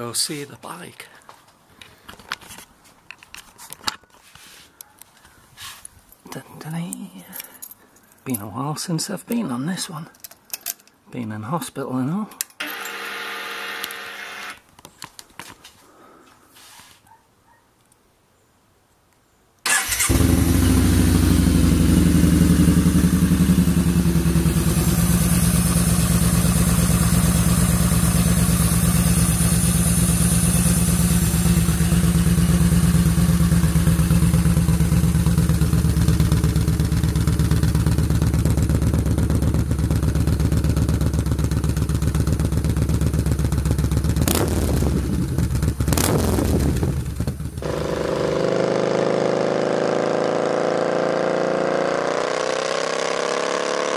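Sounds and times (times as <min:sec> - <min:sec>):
motorcycle engine idling: 0:19.8 - 0:48.6.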